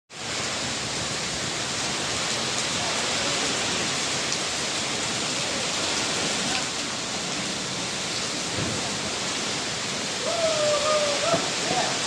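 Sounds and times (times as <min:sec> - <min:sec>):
heavy rain pouring: 0:00.1 - 0:12.0
raindrops ticking nearby: 0:00.2 - 0:09.2.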